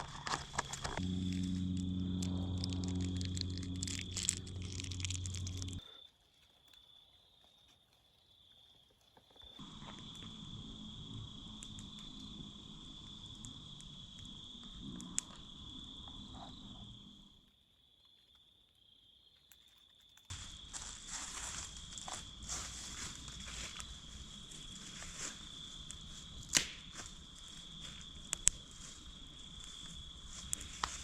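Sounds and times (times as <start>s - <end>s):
sharp crackles: 0.0s - 16.4s, 19.5s - 31.0s
insects trilling: 0.0s - 31.0s
soft low rumble: 0.8s - 5.8s, 9.6s - 17.4s
loud low hum: 1.0s - 5.8s.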